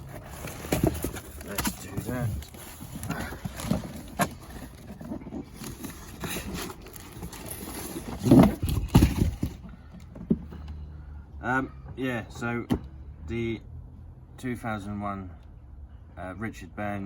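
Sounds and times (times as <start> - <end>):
boxed toy car being handled: 0.0 - 10.8.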